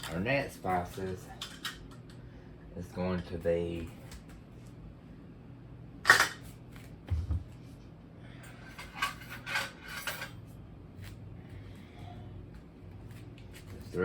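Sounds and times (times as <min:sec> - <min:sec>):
dishes clinking and rattling: 0:00.0 - 0:00.2, 0:00.8 - 0:02.2, 0:06.0 - 0:06.5, 0:08.5 - 0:10.4.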